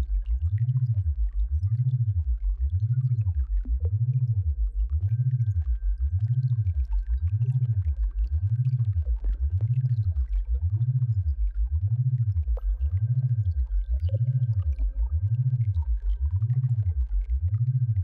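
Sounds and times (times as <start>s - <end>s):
deep wavering synthesized hum: 0.0s - 18.0s.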